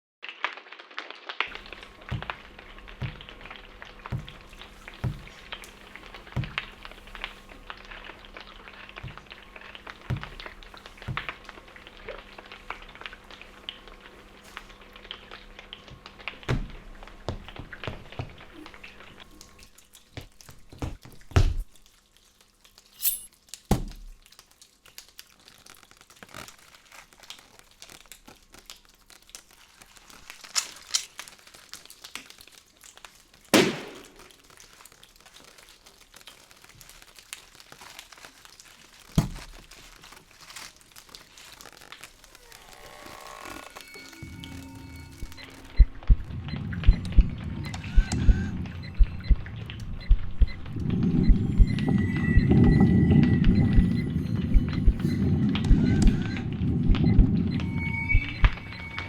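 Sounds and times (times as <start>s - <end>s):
crinkling: 1.4s - 20.8s, 21.6s - 45.8s
foley knocks and thuds: 2.0s - 5.5s, 6.2s - 6.7s, 10.1s - 11.4s
low rumble: 44.2s - 59.0s.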